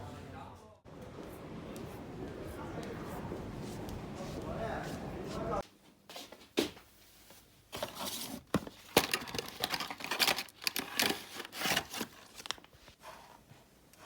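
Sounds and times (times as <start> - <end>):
crinkling and tearing: 7.9 - 13.0.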